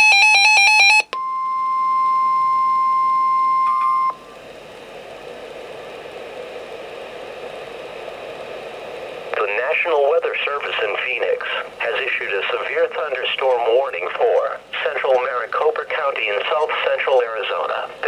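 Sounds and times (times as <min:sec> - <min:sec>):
radio hiss: 0:04.2 - 0:18.0.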